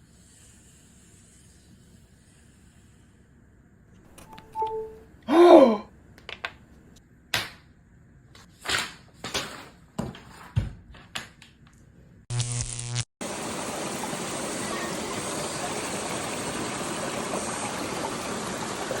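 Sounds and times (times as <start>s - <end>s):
electric buzz: 12.3s - 13.1s
running water: 13.2s - 19.0s.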